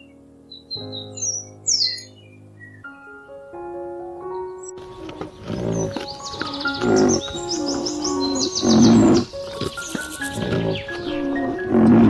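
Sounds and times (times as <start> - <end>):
background music: 0.0 - 12.0
bird chirping in trills: 4.7 - 12.0.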